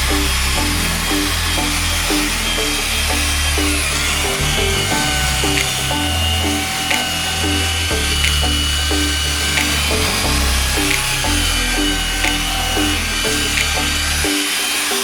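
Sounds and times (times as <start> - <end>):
bass line: 0.0 - 14.3.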